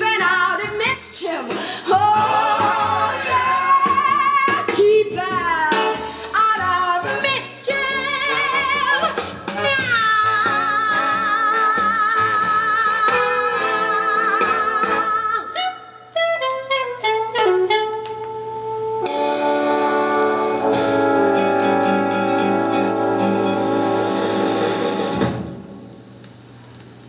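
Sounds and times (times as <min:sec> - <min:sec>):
jazz band sustained chords: 0:16.1 - 0:26.0
jazz horn held note: 0:16.2 - 0:25.4.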